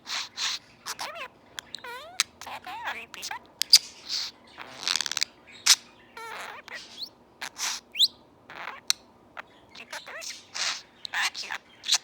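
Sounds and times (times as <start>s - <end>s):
bird sniffing sounds: 0.0s - 0.6s, 7.6s - 7.8s
warbling bird chirp: 0.0s - 12.0s.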